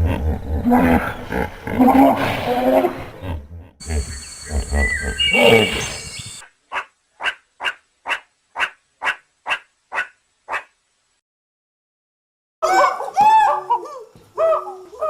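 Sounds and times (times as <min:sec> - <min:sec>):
low rumbling animal call: 0:00.0 - 0:06.4.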